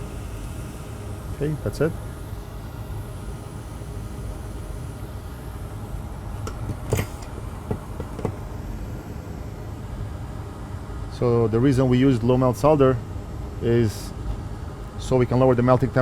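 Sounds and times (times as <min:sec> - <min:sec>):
fan-like air rumble: 0:00.0 - 0:16.0
tools tapping circuit board: 0:06.4 - 0:08.4.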